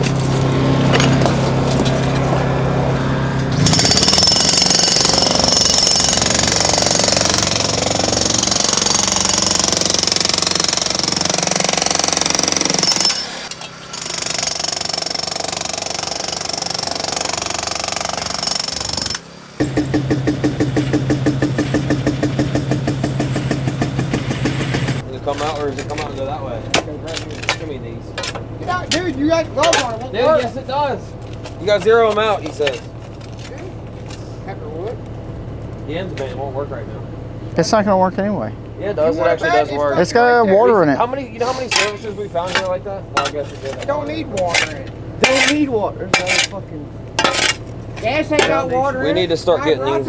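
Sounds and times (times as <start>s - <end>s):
engine hum: 0.0s - 8.2s, 19.2s - 25.8s
jackhammer breaking concrete: 3.5s - 26.2s, 41.6s - 46.6s, 47.2s - 48.7s.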